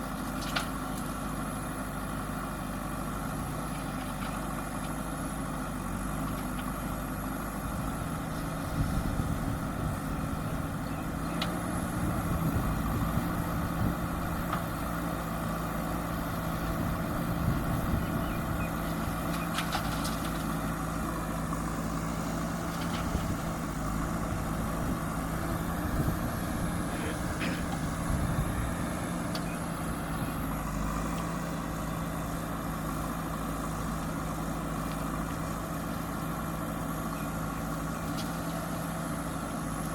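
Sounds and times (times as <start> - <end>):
diesel engine running: 0.0 - 39.9
knocks and clunks: 27.0 - 27.9.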